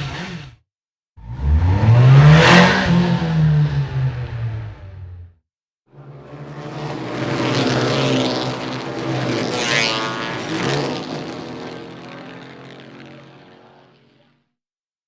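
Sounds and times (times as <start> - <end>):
motorcycle passing by: 6.0 - 14.5.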